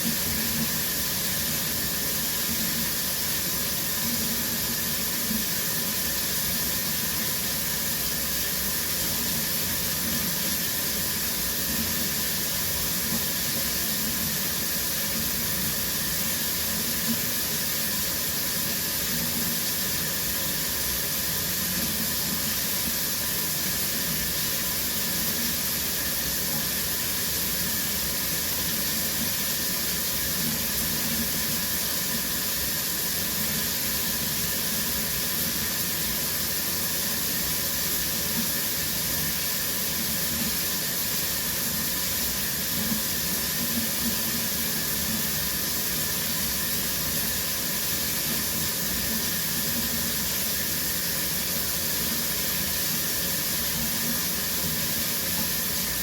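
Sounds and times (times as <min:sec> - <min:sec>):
shower water spraying: 0:00.0 - 0:56.0.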